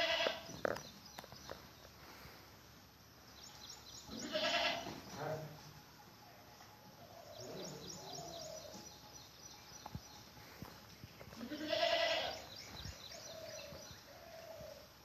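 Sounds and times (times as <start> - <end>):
goats bleating: 0.0 - 0.5, 4.1 - 4.9, 11.4 - 12.5
birds chirping faintly: 0.0 - 15.0.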